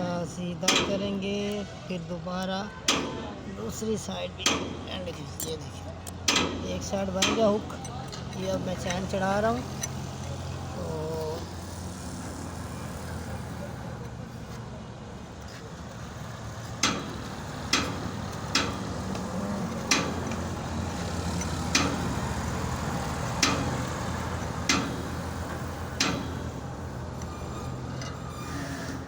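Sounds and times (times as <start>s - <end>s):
low engine hum: 0.0s - 29.0s
metallic chain clicks: 5.4s - 10.5s, 16.6s - 29.0s.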